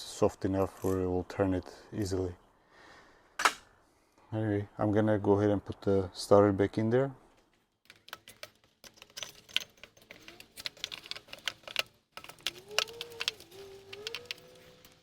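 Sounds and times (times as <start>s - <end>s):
faint wavering squeak: 12.5s - 15.0s.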